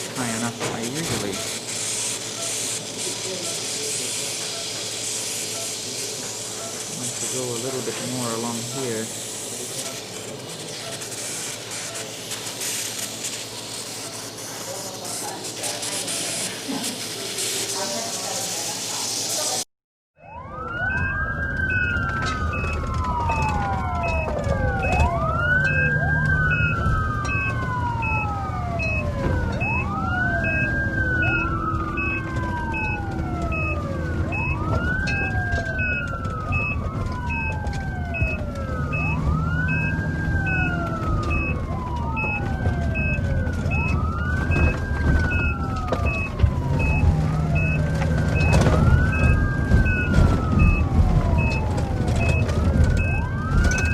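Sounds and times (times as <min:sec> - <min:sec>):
emergency vehicle siren wailing: 0:04.4 - 0:18.2, 0:20.2 - 0:53.9
high beeping: 0:23.5 - 0:37.6.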